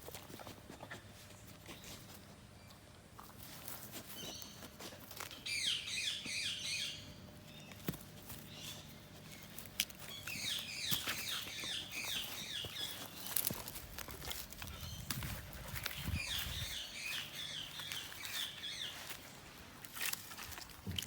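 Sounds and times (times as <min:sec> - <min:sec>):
birds chirping: 0:04.1 - 0:19.8.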